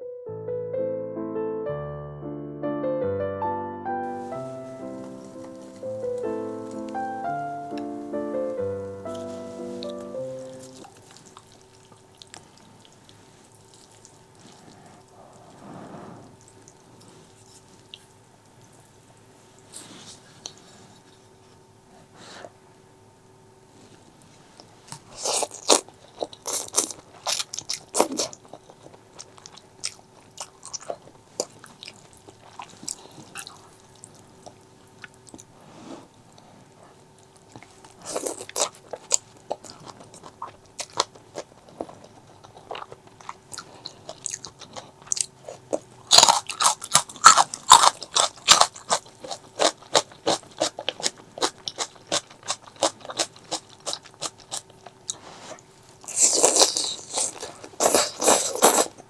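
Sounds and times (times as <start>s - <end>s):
crunching and chewing: 4.1s - 8.3s, 9.0s - 19.0s, 24.6s - 59.0s.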